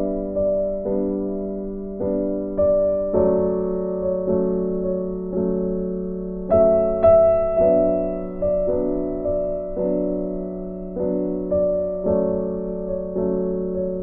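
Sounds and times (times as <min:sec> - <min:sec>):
slow piano-like chords: 0:00.0 - 0:14.0.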